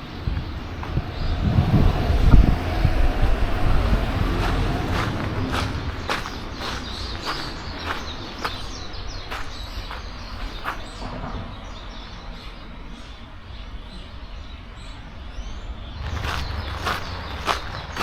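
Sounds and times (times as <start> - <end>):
footsteps outdoors: 0.0 - 12.0, 15.3 - 18.0
low ambient rumble: 0.0 - 18.0
small bird chirps: 6.0 - 18.0.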